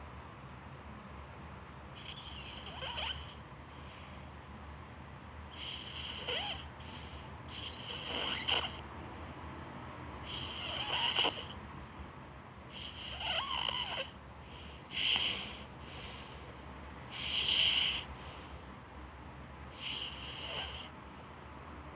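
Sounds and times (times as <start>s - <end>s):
child snoring: 2.0s - 3.4s, 5.5s - 6.8s, 7.5s - 8.8s, 10.3s - 11.6s, 12.7s - 14.2s, 14.9s - 16.0s, 17.1s - 18.1s, 19.8s - 20.9s.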